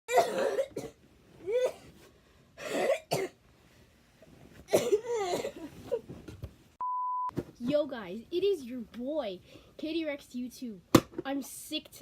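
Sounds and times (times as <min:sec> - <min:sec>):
person coughing harshly: 0:00.1 - 0:01.9, 0:02.6 - 0:03.4, 0:04.7 - 0:05.7.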